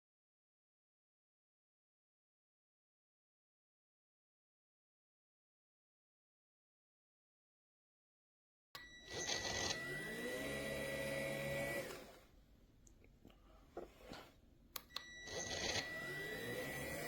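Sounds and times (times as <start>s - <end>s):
vacuum motor whining: 8.8s - 12.3s, 15.0s - 17.0s.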